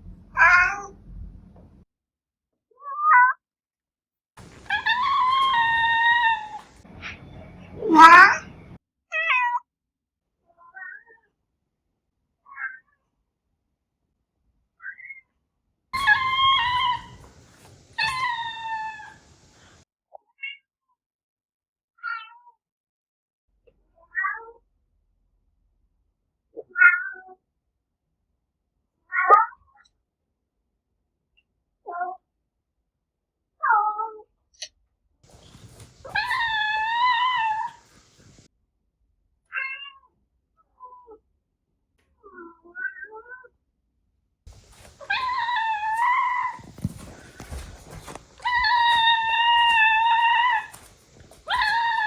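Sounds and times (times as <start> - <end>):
cats meowing: 0.3 - 1.0, 4.4 - 8.8, 16.0 - 19.8, 35.3 - 38.5, 44.5 - 52.0.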